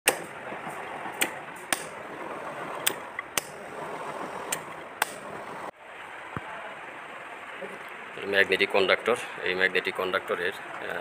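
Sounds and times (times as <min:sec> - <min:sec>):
steady hiss: 0:02.8 - 0:10.5.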